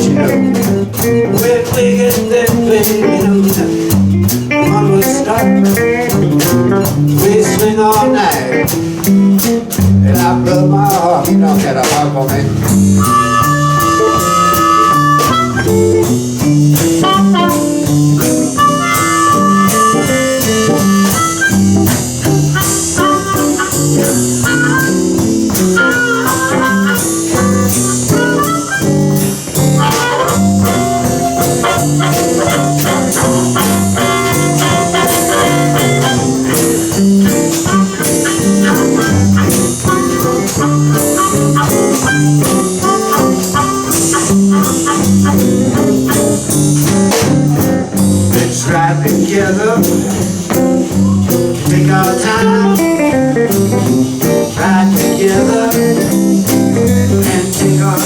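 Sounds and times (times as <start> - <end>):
drum kit steady beat: 0.0 - 58.0
electric guitars shuffle line: 0.0 - 58.0
harmonica solo: 12.8 - 47.1.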